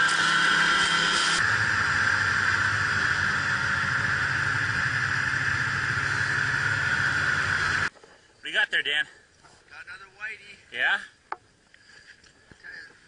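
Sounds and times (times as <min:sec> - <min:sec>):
engine drone: 0:00.0 - 0:07.9.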